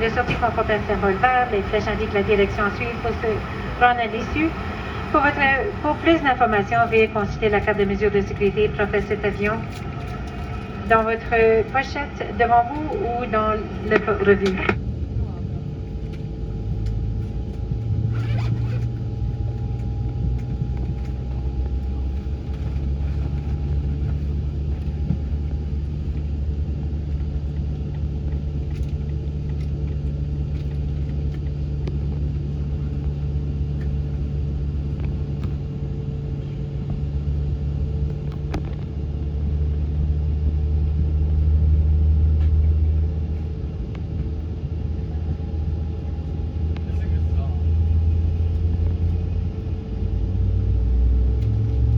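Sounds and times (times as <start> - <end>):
constant mid-pitched tone: 0.0 - 18.0
airliner cabin rumble and hum: 0.0 - 51.9.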